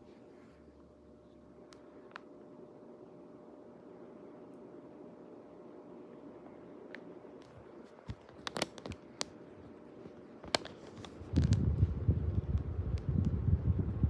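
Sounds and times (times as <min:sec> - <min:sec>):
ceiling fan faint hum: 0:00.0 - 0:14.0
air buffeting microphone: 0:11.1 - 0:14.0.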